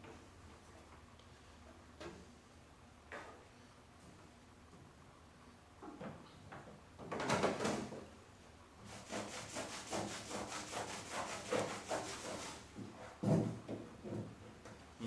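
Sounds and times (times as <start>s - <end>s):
rubbing strokes scrubbing residue: 9.0s - 12.6s.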